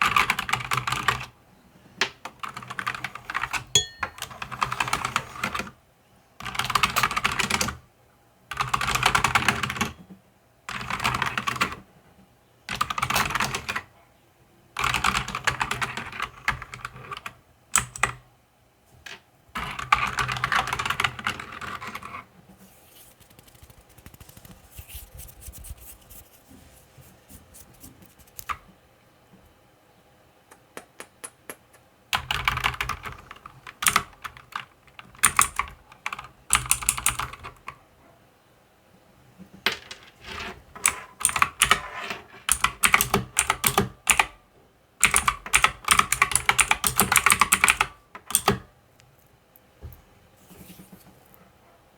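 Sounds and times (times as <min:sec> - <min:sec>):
mechanical keyboard typing: 0:00.0 - 0:01.3, 0:02.3 - 0:05.7, 0:06.4 - 0:07.8, 0:08.5 - 0:10.0, 0:10.7 - 0:11.8, 0:12.7 - 0:13.9, 0:14.8 - 0:18.2, 0:19.6 - 0:22.2, 0:32.2 - 0:37.8, 0:40.8 - 0:44.4, 0:45.0 - 0:48.7.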